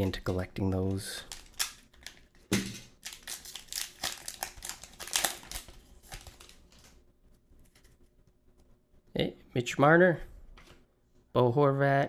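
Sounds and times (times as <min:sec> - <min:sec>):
foil wrapper crinkling: 0:00.0 - 0:07.0.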